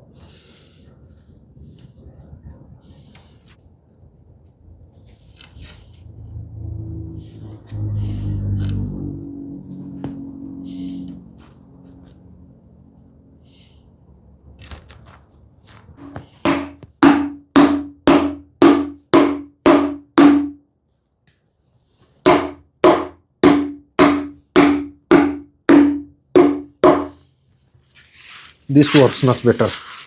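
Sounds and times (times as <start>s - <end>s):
mallet knocking on wooden block: 16.0s - 20.6s, 22.3s - 27.2s.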